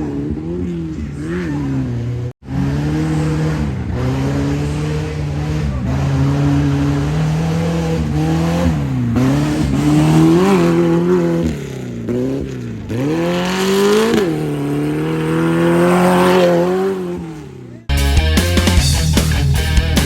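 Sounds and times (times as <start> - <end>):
race vehicle engine revving: 0.0 - 20.0.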